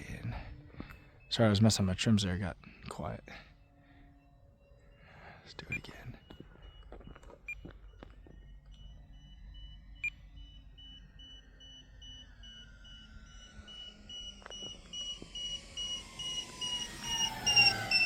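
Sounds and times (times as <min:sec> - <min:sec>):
faint whine dropping in pitch: 0:00.0 - 0:18.0
short high electronic beeps: 0:09.2 - 0:18.0.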